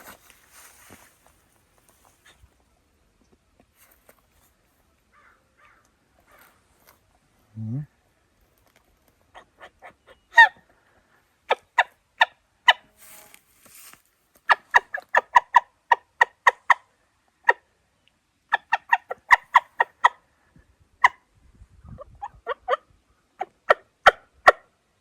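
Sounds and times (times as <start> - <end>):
turkey call yelps: 9.3 - 10.6, 14.5 - 17.6, 18.5 - 20.2.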